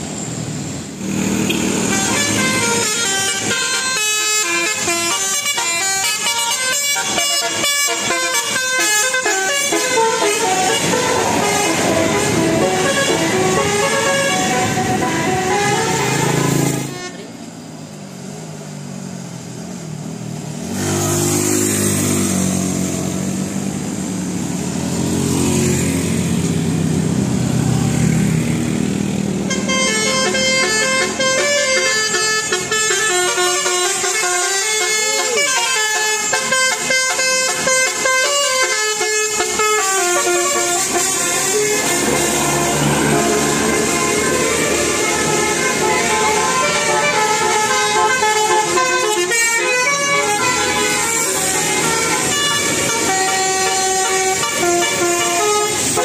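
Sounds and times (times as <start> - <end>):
musical air horns playing tunes: 1.4 - 17.3, 29.5 - 56.0.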